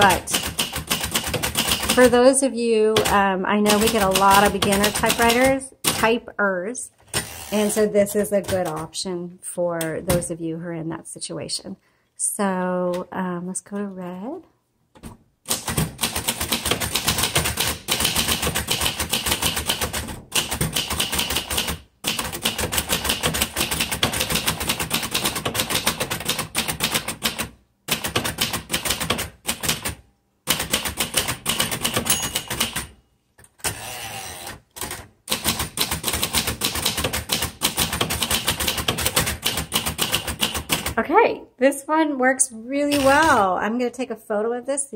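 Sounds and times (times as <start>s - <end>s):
manual typewriter typing: 0.0s - 2.3s, 2.9s - 6.2s, 7.0s - 9.0s, 15.5s - 41.0s, 42.9s - 43.5s.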